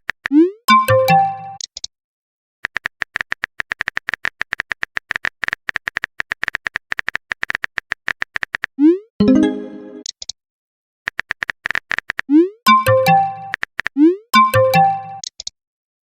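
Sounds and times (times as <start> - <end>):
phone keyboard typing clicks: 2.6 - 8.7, 11.1 - 15.5.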